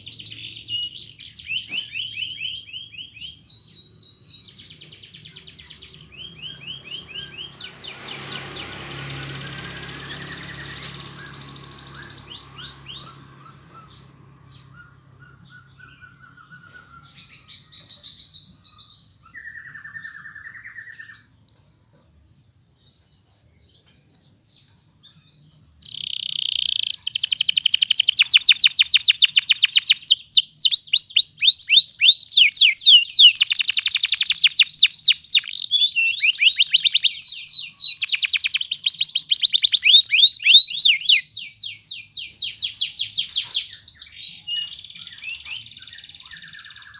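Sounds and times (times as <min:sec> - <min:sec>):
canary chirping and trilling: 0:00.0 - 0:21.7, 0:22.7 - 0:46.9
harsh buzzing bird note: 0:06.1 - 0:16.4.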